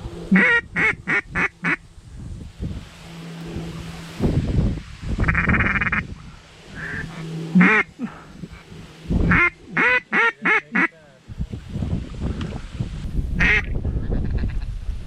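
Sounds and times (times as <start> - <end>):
wind rumble on microphone: 0.0 - 10.1, 11.2 - 15.0
duck quacking: 0.3 - 1.8, 5.2 - 6.0, 6.8 - 7.9, 9.3 - 11.0, 13.4 - 13.7.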